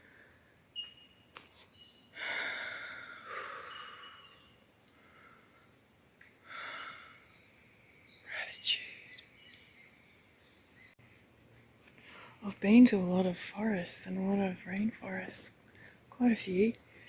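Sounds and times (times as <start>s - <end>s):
faint high bird calls: 0.6s - 12.7s
person sighing deeply: 2.2s - 4.3s.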